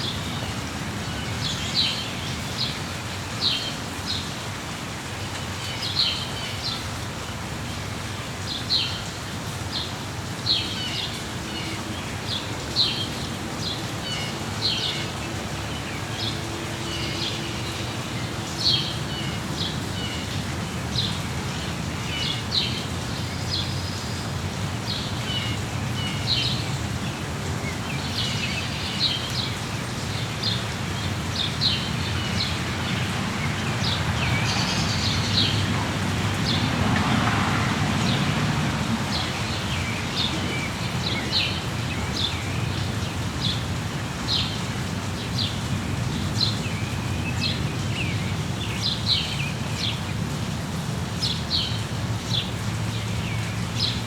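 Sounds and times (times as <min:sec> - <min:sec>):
rain pattering: 0:00.0 - 0:54.0
birds chirping: 0:38.9 - 0:43.7.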